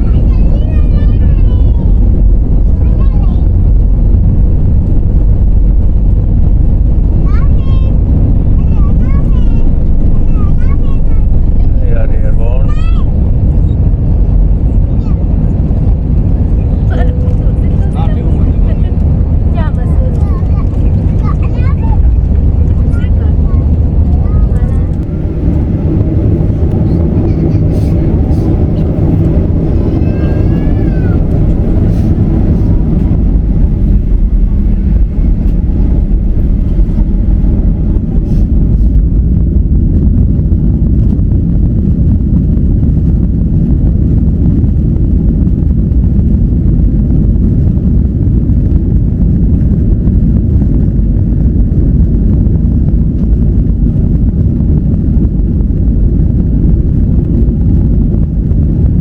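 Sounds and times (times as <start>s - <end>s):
jet engines rumbling: 0.0s - 59.0s
faint falling whine: 24.5s - 40.4s.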